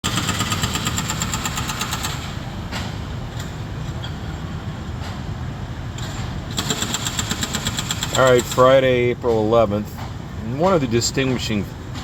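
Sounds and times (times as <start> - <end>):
jackhammer hammering concrete: 0.0 - 2.4, 6.6 - 8.7
engine running: 0.0 - 10.9.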